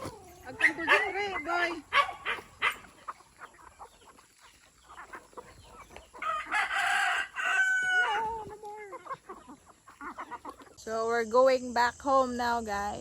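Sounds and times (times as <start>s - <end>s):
rooster crowing: 6.2s - 8.4s.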